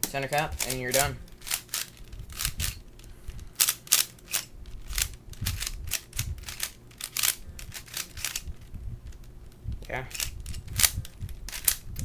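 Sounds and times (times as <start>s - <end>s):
plastic puzzle cube clicking: 3.6s - 8.4s, 10.1s - 12.0s.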